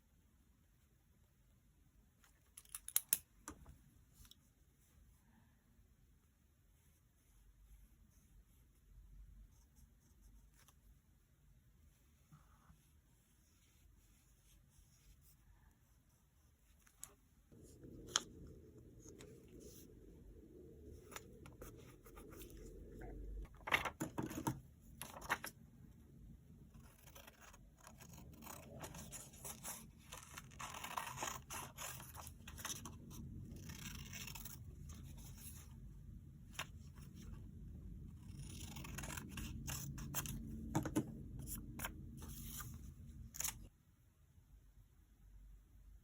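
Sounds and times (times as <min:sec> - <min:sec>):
low background hum: 0:00.0 - 0:46.0
scissors snipping paper: 0:26.8 - 0:34.6, 0:38.2 - 0:41.8
paper tearing: 0:38.2 - 0:40.4.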